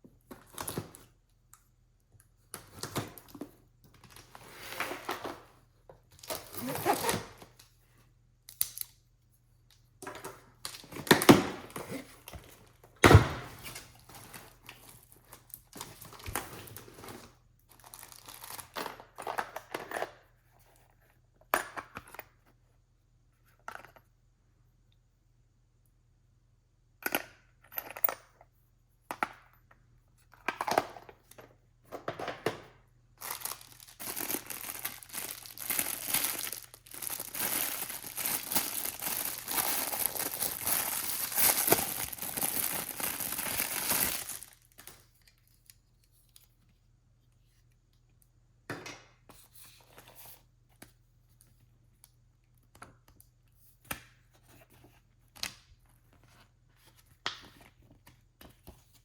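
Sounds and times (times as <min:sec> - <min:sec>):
packaging crinkling and tearing: 0:06.2 - 0:07.4, 0:33.2 - 0:45.8
packaging rustling and clicking: 0:33.2 - 0:45.5.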